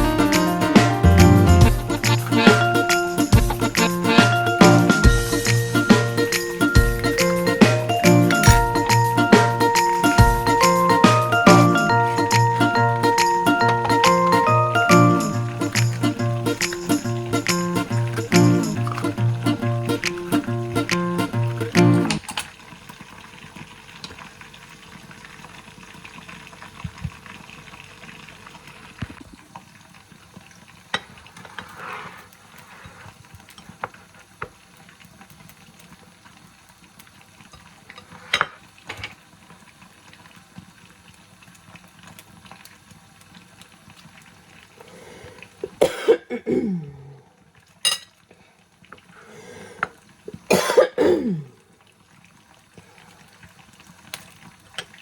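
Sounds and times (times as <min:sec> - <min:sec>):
person coughing: 0:45.8 - 0:47.0, 0:50.5 - 0:51.6.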